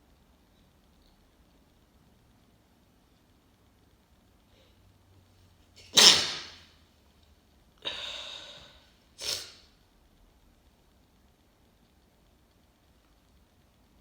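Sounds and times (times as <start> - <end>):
person sneezing: 5.8 - 6.6, 7.8 - 9.6.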